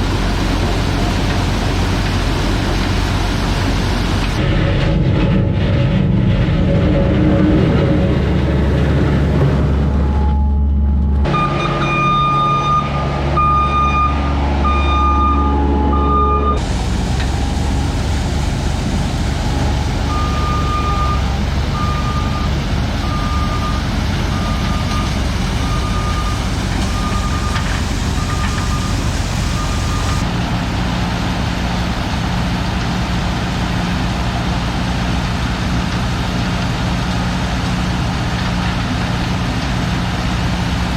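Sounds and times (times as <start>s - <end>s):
diesel engine running: 0.0s - 40.9s
backup alarm beeping: 10.0s - 16.6s, 19.5s - 30.2s.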